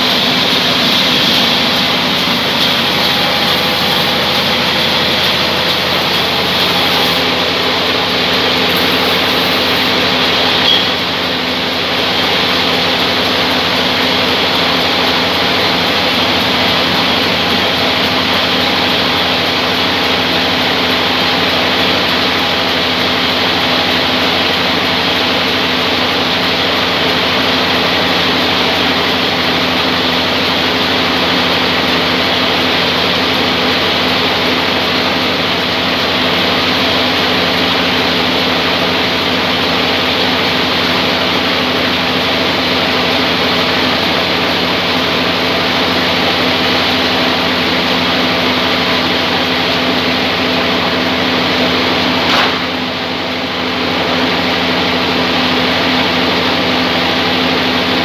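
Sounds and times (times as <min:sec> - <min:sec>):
steady hum: 0:00.0 - 0:25.5
band sawmill machine running: 0:00.0 - 0:58.0.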